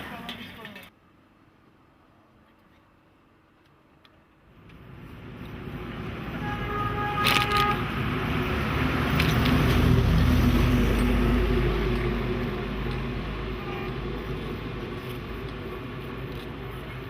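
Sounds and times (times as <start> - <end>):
vehicle passing: 4.8 - 17.0.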